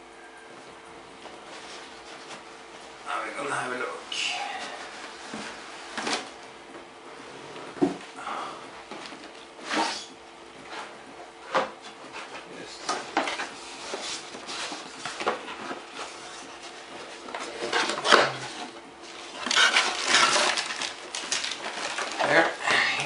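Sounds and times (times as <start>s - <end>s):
cardboard packaging rustling: 13.0s - 22.7s.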